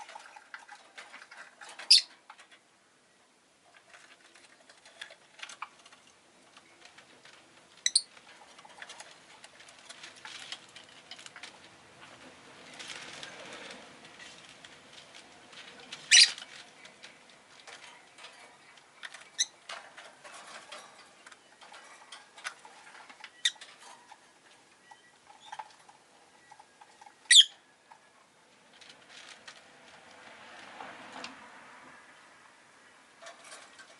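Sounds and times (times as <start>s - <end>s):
soft clicks and rustling: 0.0s - 2.7s, 3.6s - 31.5s, 33.1s - 33.9s
lovebird calling: 1.9s - 2.1s, 7.8s - 8.1s, 16.1s - 16.4s, 27.3s - 27.6s.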